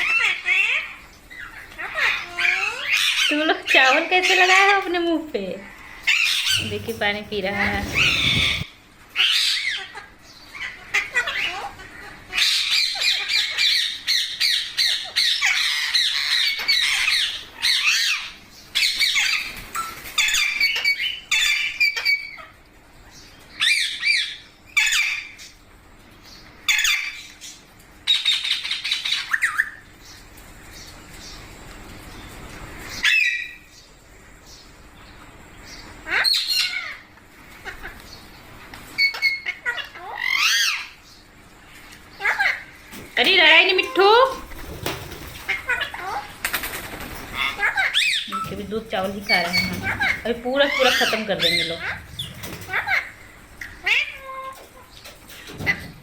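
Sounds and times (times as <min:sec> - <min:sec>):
parakeets squawking: 0:05.7 - 0:08.7, 0:42.2 - 0:55.0.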